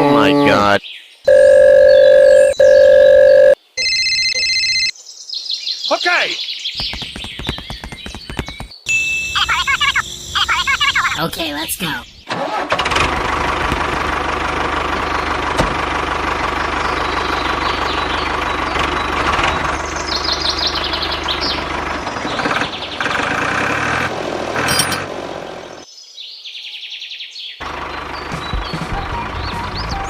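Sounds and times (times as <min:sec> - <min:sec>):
high chirps: 0:06.8 - 0:11.2
engine knocking rhythmically: 0:12.8 - 0:25.7, 0:27.6 - 0:30.0.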